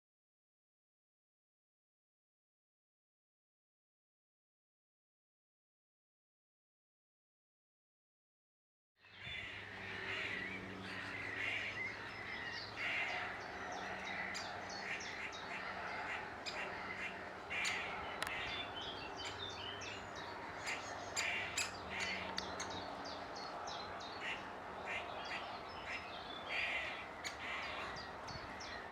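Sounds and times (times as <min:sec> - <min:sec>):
birds chirping: 0:09.0 - 0:28.9.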